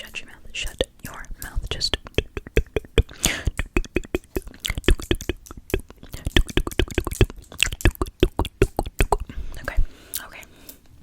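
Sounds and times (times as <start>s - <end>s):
wet mouth clicks and smacks: 1.6s - 10.3s.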